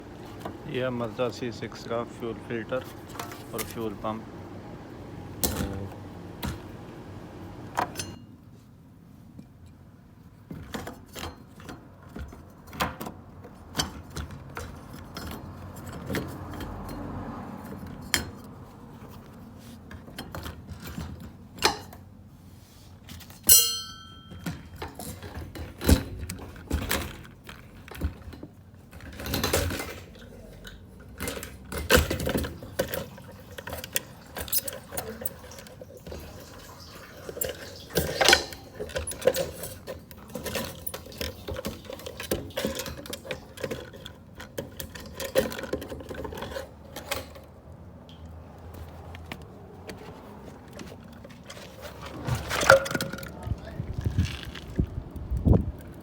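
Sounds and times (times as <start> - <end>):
metal tools clinking: 23.3 - 25.8, 29.0 - 47.5, 50.7 - 53.5
ringing metallic clink: 23.5 - 24.5.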